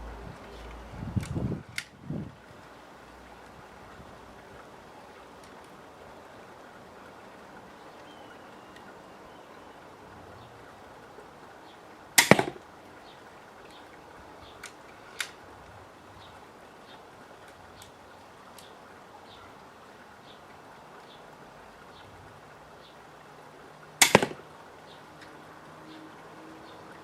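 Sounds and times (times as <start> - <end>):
crossbow string snapping: 1.2 - 2.0, 12.2 - 12.6, 14.6 - 15.4, 24.0 - 24.4
soft clicks: 8.7 - 8.9, 14.6 - 15.4.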